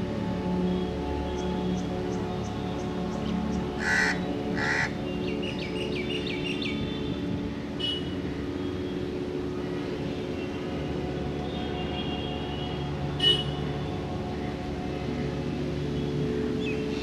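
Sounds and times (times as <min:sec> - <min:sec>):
rough bird calls: 0:03.8 - 0:05.0.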